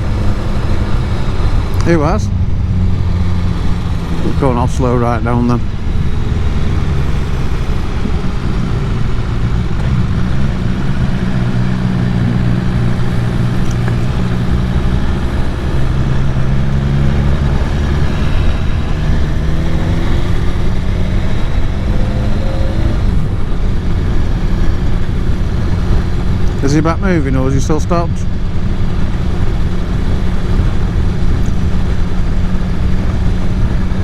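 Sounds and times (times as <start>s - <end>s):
wind noise on microphone: 0.0s - 27.2s
motorcycle engine running: 0.0s - 34.0s.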